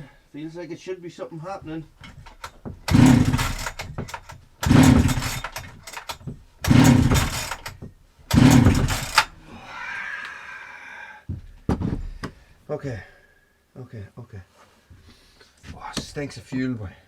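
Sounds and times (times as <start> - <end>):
chainsaw pull-start cranking: 2.0 - 9.4.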